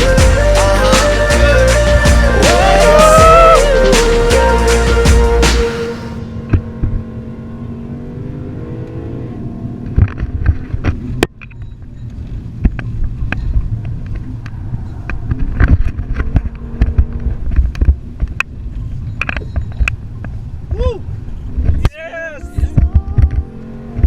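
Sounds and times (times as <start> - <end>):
race car engine from inside cabin: 6.3 - 10.4.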